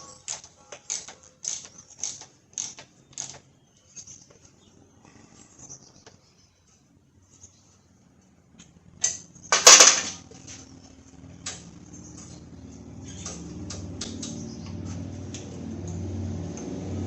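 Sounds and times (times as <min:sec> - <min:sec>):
low engine rumble: 0:03.6 - 0:17.0
metal parts clanking: 0:09.0 - 0:10.6.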